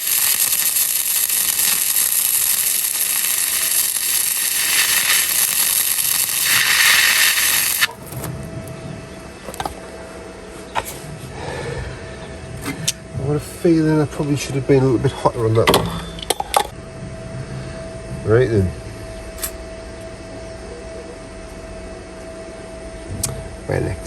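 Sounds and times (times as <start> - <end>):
welder arc crackling and hissing: 0.0 - 8.3.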